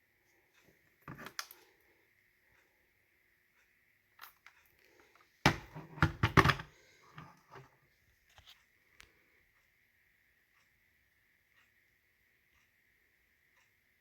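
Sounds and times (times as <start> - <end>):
handling clicks and knocks: 5.4 - 6.7.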